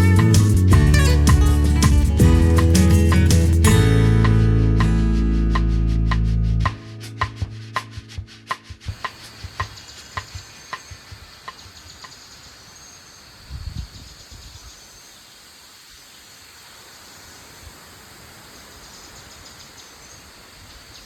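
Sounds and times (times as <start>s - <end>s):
high insect hiss: 8.9s - 21.0s.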